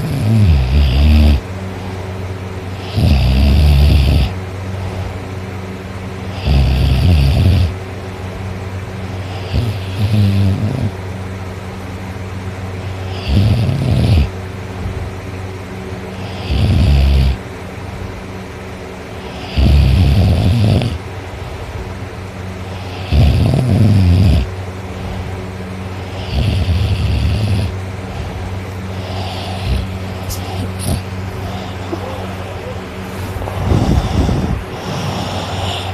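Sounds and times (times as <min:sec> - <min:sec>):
person snoring: 0:00.0 - 0:01.4, 0:02.8 - 0:04.4, 0:06.3 - 0:07.7, 0:09.2 - 0:10.9, 0:13.0 - 0:14.3, 0:16.2 - 0:17.4, 0:19.3 - 0:21.0, 0:22.7 - 0:25.2, 0:26.0 - 0:35.9
steady low hum: 0:00.0 - 0:35.9.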